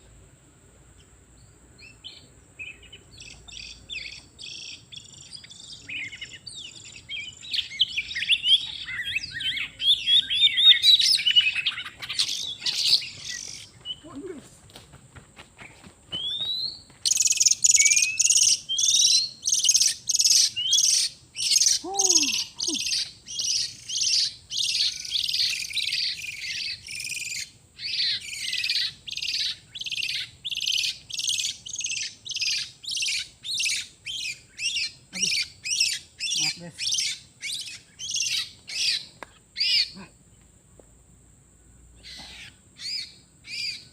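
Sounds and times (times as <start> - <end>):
bird harsh scolding calls: 3.2 - 14.4, 17.1 - 40.0, 42.0 - 43.8.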